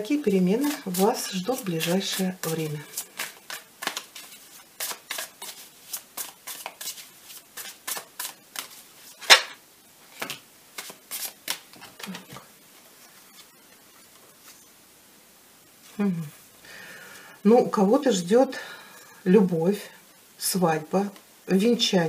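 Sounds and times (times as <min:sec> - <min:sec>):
cards being shuffled: 0:00.6 - 0:14.6
card slap: 0:08.6 - 0:09.6.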